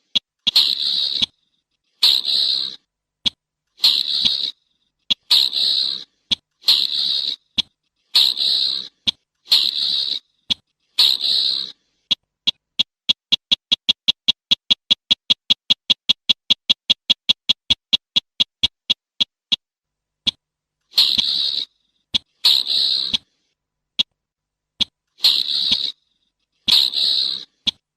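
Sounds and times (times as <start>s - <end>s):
bird harsh scratchy calls: 0.0s - 2.9s, 3.8s - 15.5s, 20.9s - 24.1s, 24.8s - 27.8s
bird rapid ticking notes: 11.0s - 19.6s.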